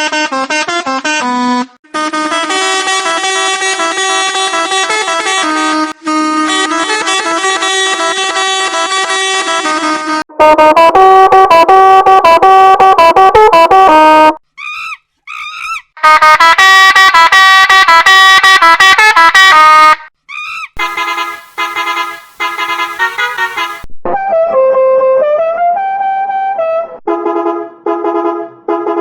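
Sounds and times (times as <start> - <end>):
short pitched horn toots: 20.8 - 23.9.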